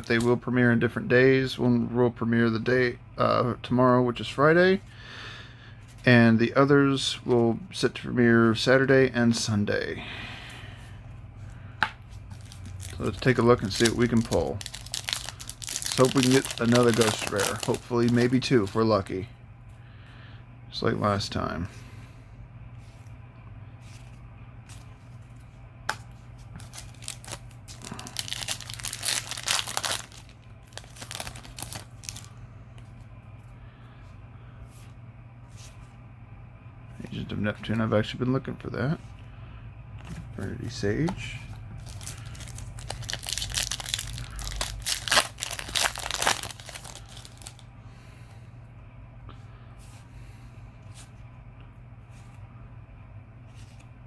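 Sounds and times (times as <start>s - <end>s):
low steady hum: 0.0s - 54.0s
wrapper tearing and crumpling: 12.4s - 18.5s, 26.6s - 32.3s, 41.8s - 47.6s.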